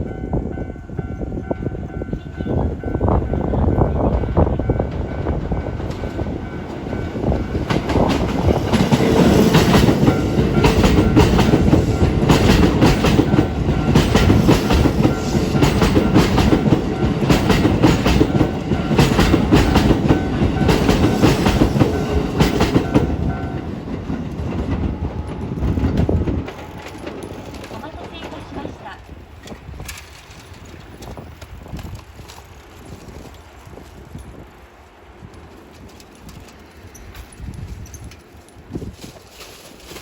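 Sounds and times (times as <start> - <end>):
level crossing warning bell: 0.0 - 7.6, 9.3 - 23.7
train wheels clattering over rail joints: 3.8 - 40.0.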